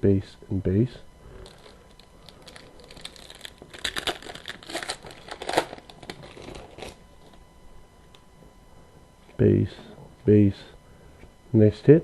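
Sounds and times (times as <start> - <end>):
card pack wrapper crinkling: 1.4 - 7.4.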